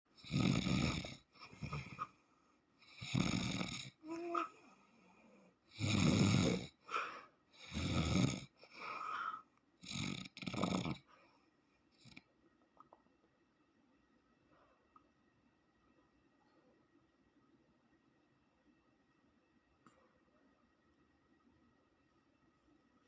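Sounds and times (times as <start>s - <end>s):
man snoring: 0.2s - 2.1s, 2.8s - 4.5s, 5.7s - 6.8s, 7.6s - 11.1s
soft breathing: 4.0s - 5.7s, 6.8s - 7.6s, 8.6s - 9.5s, 11.0s - 12.0s, 14.4s - 15.2s.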